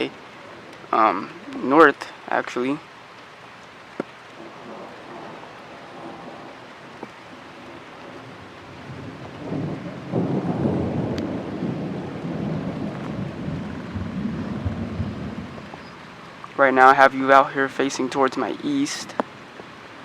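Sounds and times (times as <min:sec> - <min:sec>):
light rain hissing: 0:00.0 - 0:20.0
distant thunder rumbling: 0:04.3 - 0:16.5.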